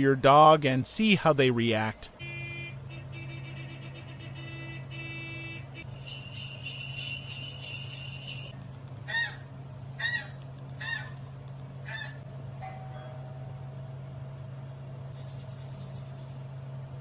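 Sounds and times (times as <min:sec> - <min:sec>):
bells jingling: 0:00.0 - 0:02.2, 0:05.8 - 0:08.6, 0:15.2 - 0:16.6
squeaky honks: 0:02.2 - 0:08.5.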